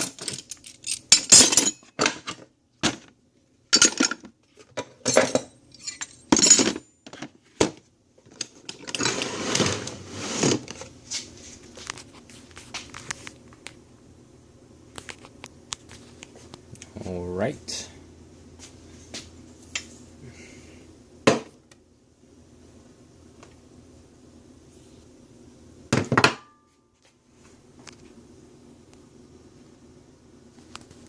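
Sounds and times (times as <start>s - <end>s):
metal tools clanking in toolbox: 0.0s - 2.4s, 3.8s - 4.2s, 4.8s - 6.9s
scraping and rustling: 8.4s - 13.4s.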